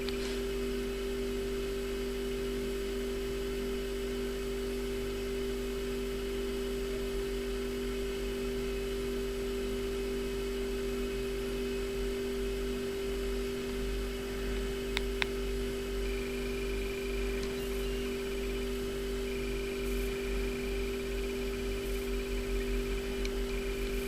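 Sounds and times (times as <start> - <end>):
electrical hum: 14.5 - 15.5
short clicks: 14.9 - 15.3.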